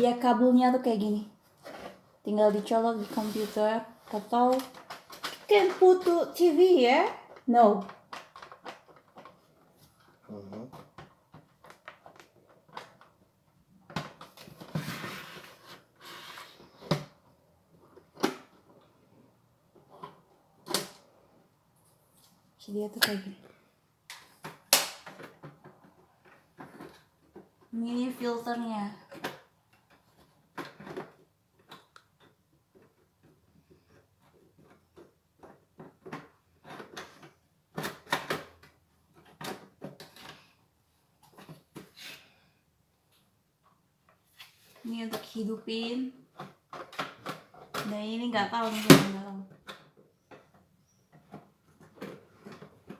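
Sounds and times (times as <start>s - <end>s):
plastic clatters: 4.1s - 16.0s.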